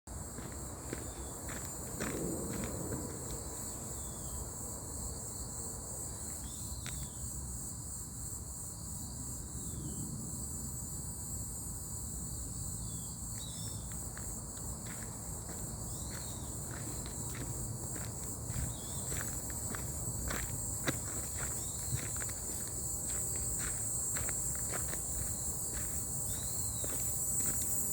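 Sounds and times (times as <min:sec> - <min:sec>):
insects chirring: 0:00.1 - 0:27.9
footsteps on forest path: 0:00.2 - 0:04.2, 0:13.3 - 0:27.9.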